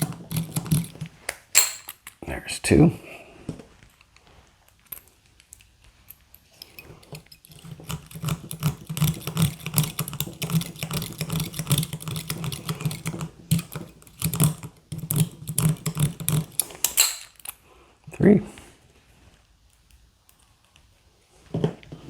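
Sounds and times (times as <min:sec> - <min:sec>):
lock pick raking scratchy clicking: 0:00.0 - 0:02.2, 0:06.4 - 0:17.6.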